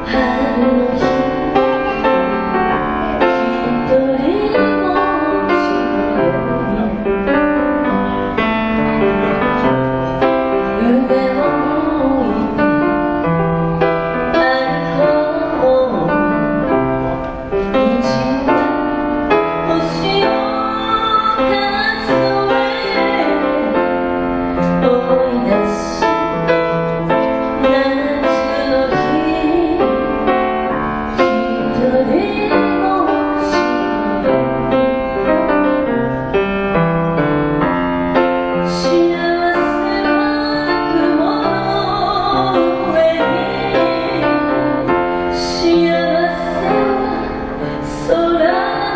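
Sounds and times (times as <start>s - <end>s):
piano accompaniment: 0.0s - 48.9s
person singing: 17.6s - 18.9s, 31.1s - 34.5s, 38.6s - 48.9s.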